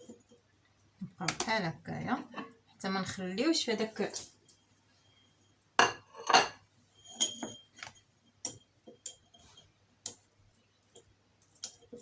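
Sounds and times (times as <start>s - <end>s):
utensils clinking on strainer: 5.9s - 10.2s.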